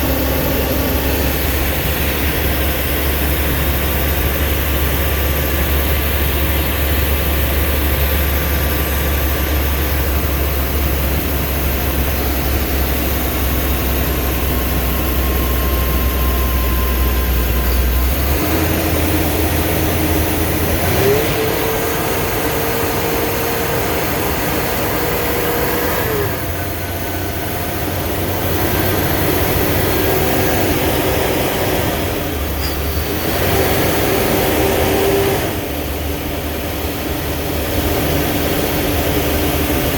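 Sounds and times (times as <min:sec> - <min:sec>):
thin whine: 0:00.0 - 0:20.8
bus engine and road noise: 0:00.0 - 0:39.9.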